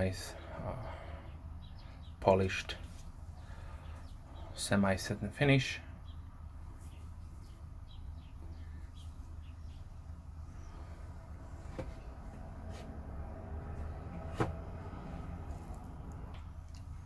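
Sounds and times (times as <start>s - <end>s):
room hum: 5.8s - 17.0s.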